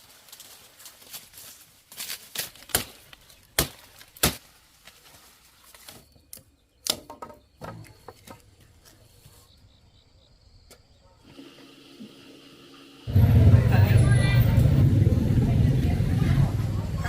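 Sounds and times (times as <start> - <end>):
blade chopping sugarcane: 2.0 - 3.0, 3.6 - 4.4.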